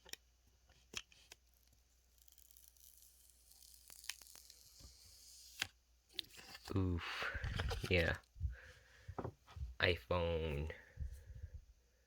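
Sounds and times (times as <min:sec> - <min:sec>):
protective film peeling hiss: 0:01.2 - 0:05.8.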